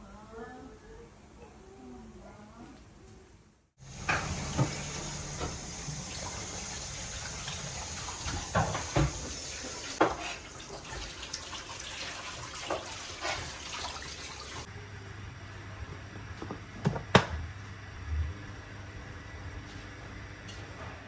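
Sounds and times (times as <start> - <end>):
utensils and dishes clinking: 3.8 - 11.1
tap running into a sink: 3.8 - 14.6.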